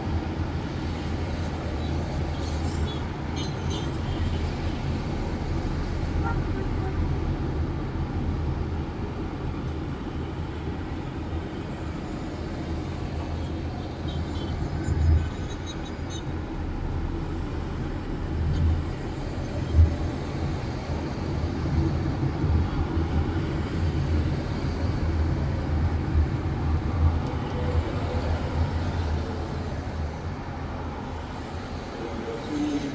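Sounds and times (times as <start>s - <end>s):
road traffic rumble: 0.0s - 32.9s.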